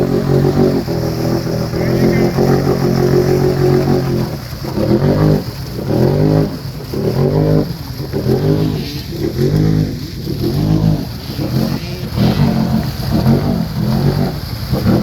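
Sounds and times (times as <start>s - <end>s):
atv engine revving: 0.0s - 15.0s.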